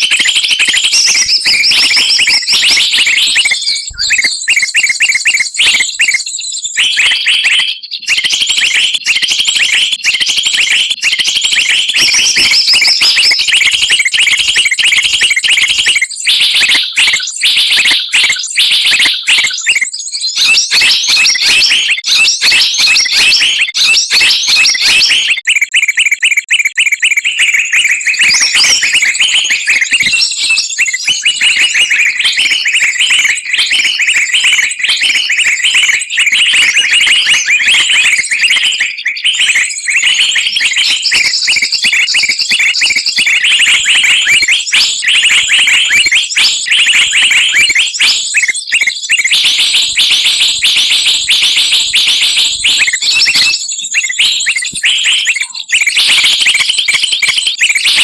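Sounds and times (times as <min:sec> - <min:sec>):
songbird chorus chirping: 0:00.6 - 0:06.2.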